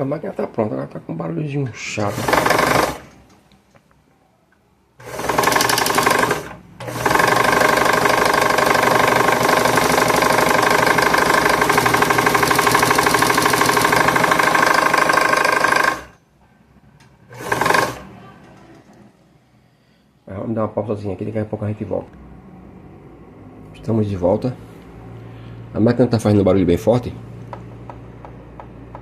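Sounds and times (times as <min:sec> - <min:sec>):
sewing machine running: 0:02.0 - 0:03.2, 0:05.0 - 0:16.2, 0:17.3 - 0:18.2
knocking noise: 0:27.5 - 0:29.0.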